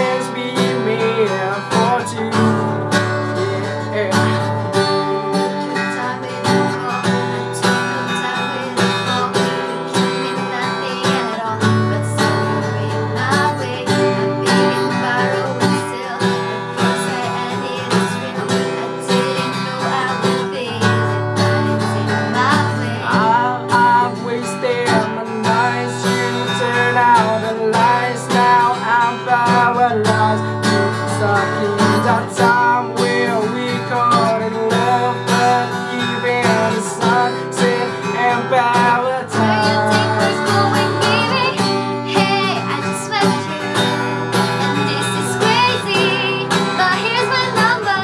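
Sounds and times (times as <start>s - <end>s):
acoustic guitar strumming: 0.0s - 48.0s
wordless sung vocal runs: 0.0s - 48.0s.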